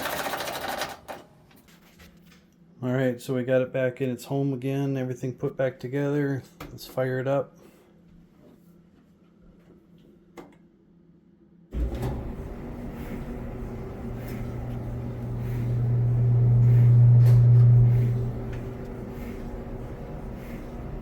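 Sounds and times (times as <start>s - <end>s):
clothes dryer running: 0.0s - 1.5s, 11.7s - 21.0s
low hum: 11.7s - 21.0s.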